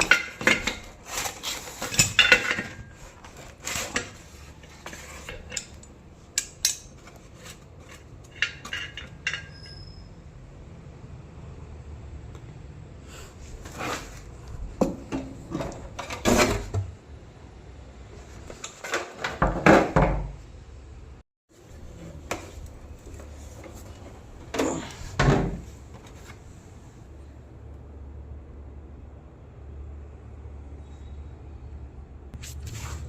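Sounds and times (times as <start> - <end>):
hard objects knocking and clattering: 0.0 - 9.6, 13.6 - 17.0, 18.4 - 20.4.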